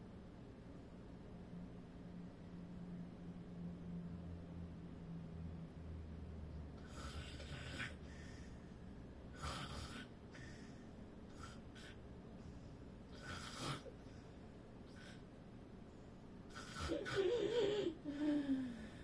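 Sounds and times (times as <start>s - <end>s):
faint snoring: 6.8s - 8.7s, 9.3s - 14.2s, 14.9s - 15.3s, 16.5s - 19.0s.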